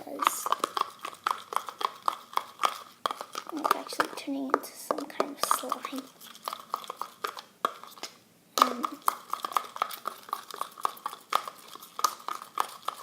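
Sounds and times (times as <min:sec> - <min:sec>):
slime being stirred: 0:00.0 - 0:13.0
utensil clicking against container: 0:04.9 - 0:13.0.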